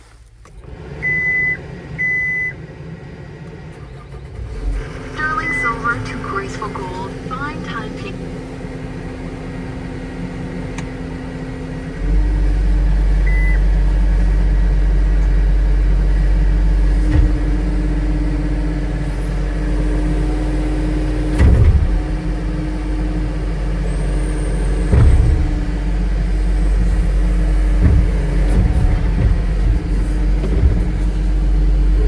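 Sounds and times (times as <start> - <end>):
diesel engine revving up: 0.6 - 32.0
short clunks: 11.9 - 32.0.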